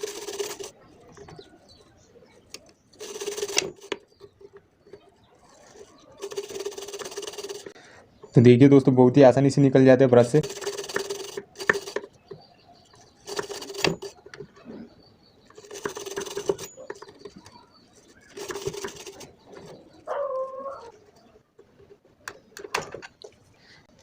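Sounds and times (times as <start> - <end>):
brush scrubbing circuit board: 0.0 - 0.8, 3.0 - 4.0, 5.5 - 7.8, 10.4 - 12.1, 13.1 - 14.2, 15.5 - 17.1, 18.0 - 19.4
pigeon-like cooing call: 16.6 - 21.4.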